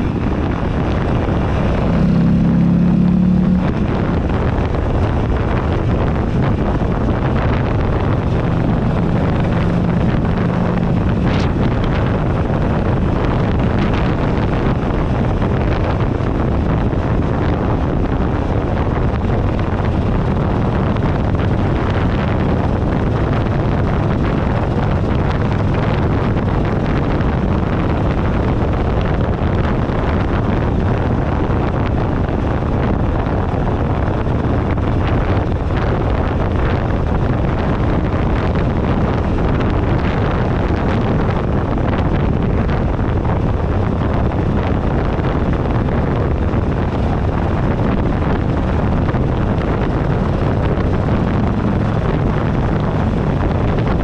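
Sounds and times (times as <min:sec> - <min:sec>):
motorcycle engine running: 0:00.0 - 0:54.0
road noise: 0:00.0 - 0:54.0
wind buffeting microphone: 0:00.0 - 0:54.0.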